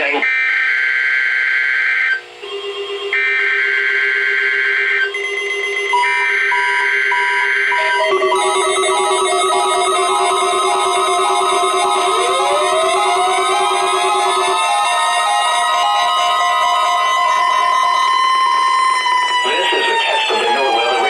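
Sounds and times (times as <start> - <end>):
synthesizer-like electronic tones: 5.1 - 21.0
steady lower tone: 5.2 - 20.9
screechy two-tone digital data: 5.2 - 21.0.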